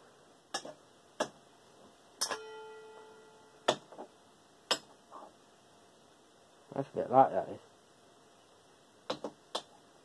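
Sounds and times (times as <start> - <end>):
metallic ring: 2.2 - 3.7.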